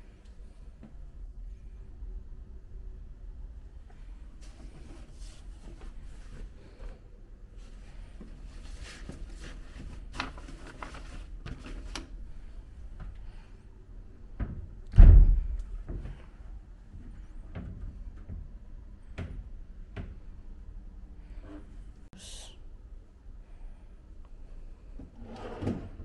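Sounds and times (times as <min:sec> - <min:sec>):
rustling and clicks of handling: 0:08.2 - 0:12.2
heavy thump: 0:14.4 - 0:16.2.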